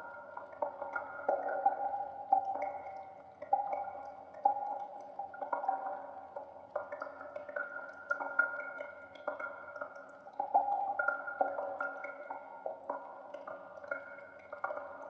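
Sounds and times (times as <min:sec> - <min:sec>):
water drops plinking in cave: 0:00.0 - 0:15.0.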